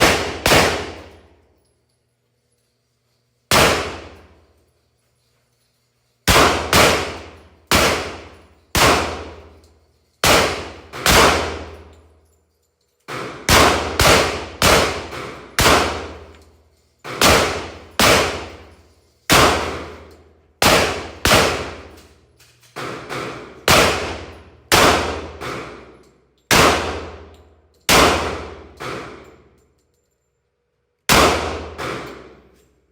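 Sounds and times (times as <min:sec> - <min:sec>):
pistol shots: 0:00.0 - 0:01.3, 0:03.5 - 0:04.3, 0:06.3 - 0:09.6, 0:10.2 - 0:11.9, 0:13.1 - 0:16.4, 0:17.1 - 0:22.0, 0:22.8 - 0:25.9, 0:26.5 - 0:27.3, 0:27.9 - 0:29.2, 0:31.1 - 0:32.4.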